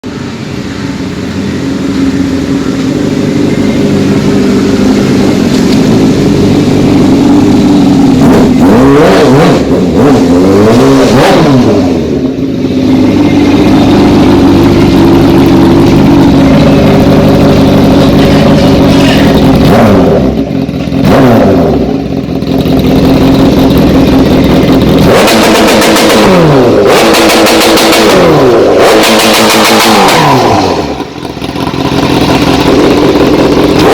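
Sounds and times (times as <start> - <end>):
motorcycle engine idling and revving: 0.0 - 33.9.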